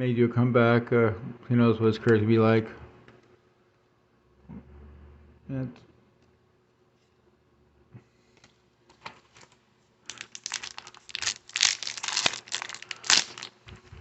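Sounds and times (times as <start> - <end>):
foil wrapper crinkling and tearing: 9.0 - 13.7.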